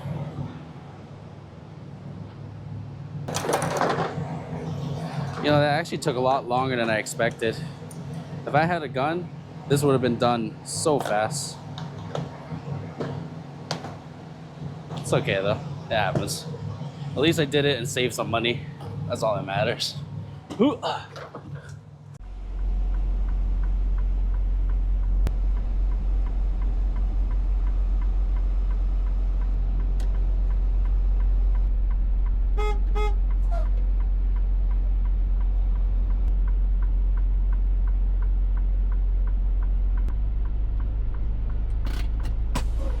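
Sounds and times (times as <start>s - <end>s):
diesel truck engine rumbling: 0.0s - 43.0s
short horn beeps: 32.6s - 33.7s.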